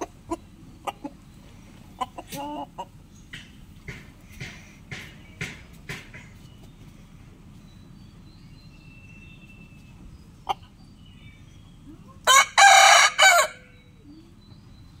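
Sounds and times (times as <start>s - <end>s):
rooster crowing: 12.2s - 13.8s.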